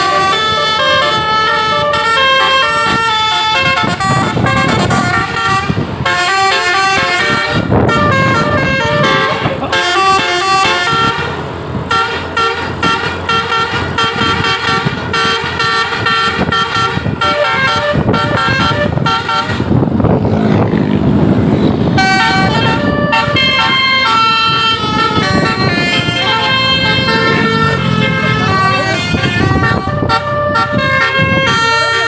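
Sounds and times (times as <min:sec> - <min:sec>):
bus horn playing melody: 0:00.0 - 0:32.0
rushing noise: 0:17.8 - 0:31.4.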